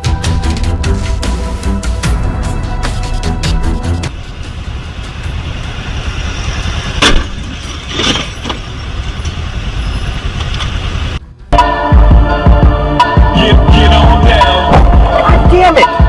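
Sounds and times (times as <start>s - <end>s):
vehicle engine and road noise: 0.0s - 11.6s.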